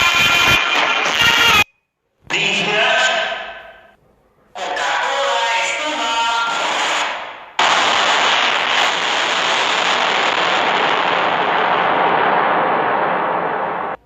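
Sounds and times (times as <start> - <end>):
loud crackling noise burst: 6.5 - 14.0.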